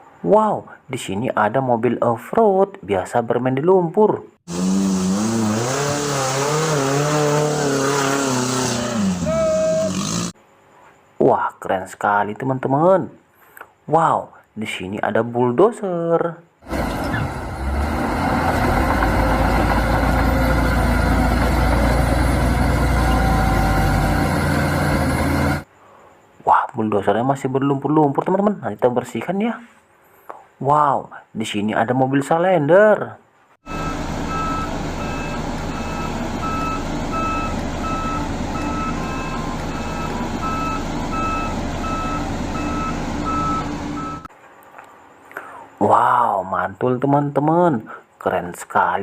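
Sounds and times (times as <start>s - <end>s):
bulldozer diesel engine rumbling: 4.5s - 10.4s, 16.6s - 25.6s, 33.6s - 44.3s
reversing alarm beeping: 9.2s - 10.1s, 22.6s - 25.0s, 33.6s - 44.3s.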